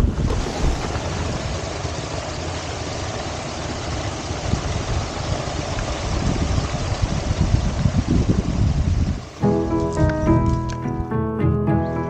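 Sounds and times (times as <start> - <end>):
wind buffeting microphone: 0.0 - 2.1, 4.3 - 11.1.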